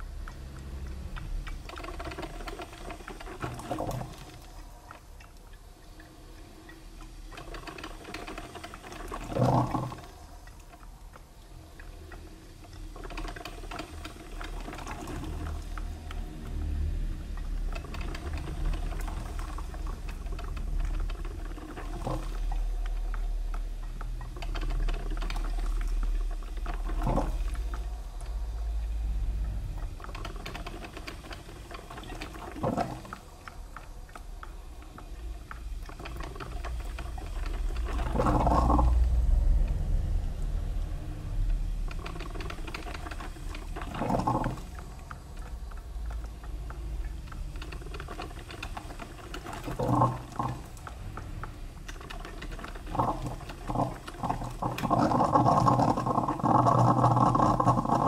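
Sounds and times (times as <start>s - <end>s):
coffee machine gurgling and sputtering: 0.0s - 58.0s
low hum: 14.9s - 21.3s, 25.3s - 48.1s.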